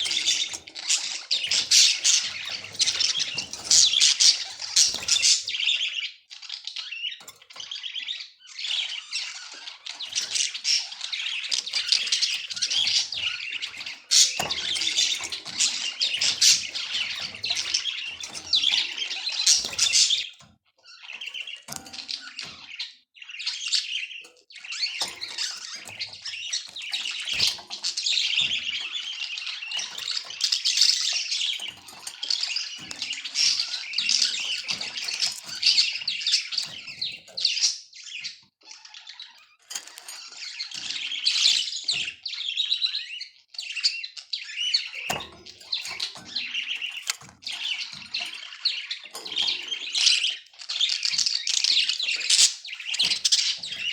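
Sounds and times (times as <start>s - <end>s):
budgerigar warbling and chirping: 0.0s - 39.6s.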